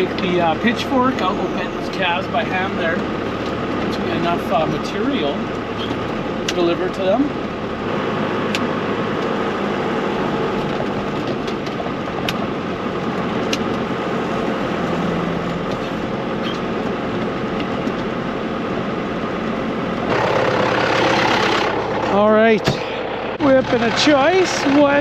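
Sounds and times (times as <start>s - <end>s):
vehicle engine idling: 0.0s - 25.0s.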